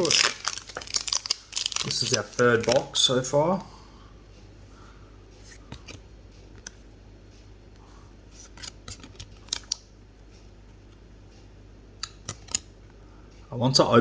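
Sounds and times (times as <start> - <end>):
cardboard and wrapper crackling: 0.0 - 3.0.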